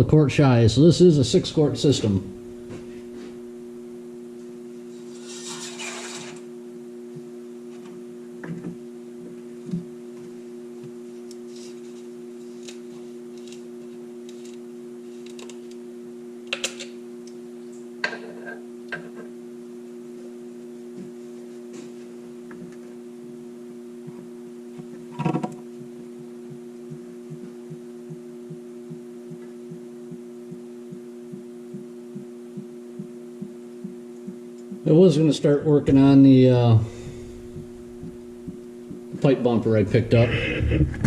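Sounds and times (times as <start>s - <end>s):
low two-tone hum: 0.0s - 5.7s, 22.3s - 41.0s.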